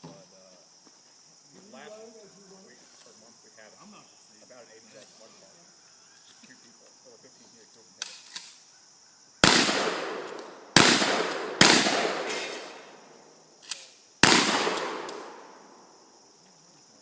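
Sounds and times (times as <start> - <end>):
gunshots with rolling echo: 9.4 - 13.4, 14.2 - 15.9.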